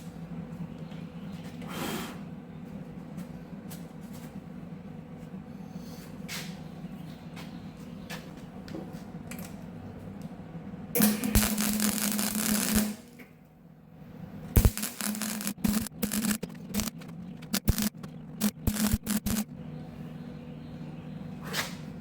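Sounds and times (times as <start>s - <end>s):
steady hum: 0.0s - 22.0s
welding arc crackling: 11.0s - 13.2s, 14.6s - 19.5s.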